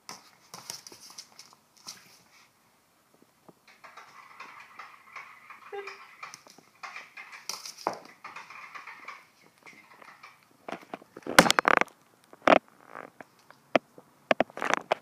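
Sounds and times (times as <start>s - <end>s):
faint rustling: 0.0s - 15.0s
sharp knocks and clatter: 3.6s - 12.6s.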